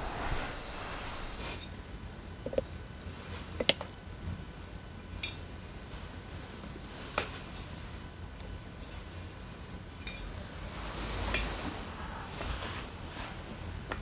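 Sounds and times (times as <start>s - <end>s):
rustle: 1.4s - 14.0s
metal tools clicking and clinking: 4.8s - 11.5s.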